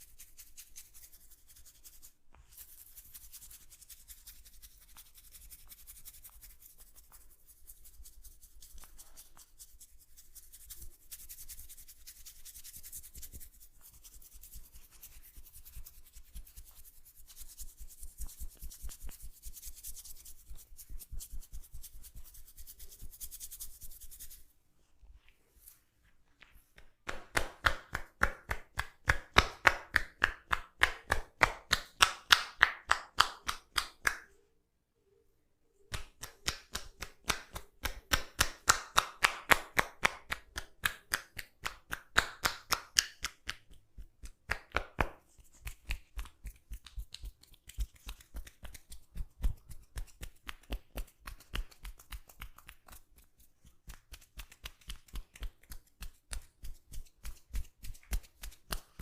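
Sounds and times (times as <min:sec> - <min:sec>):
hands tapping in massage rhythm: 0:26.8 - 0:34.3, 0:35.9 - 0:59.0.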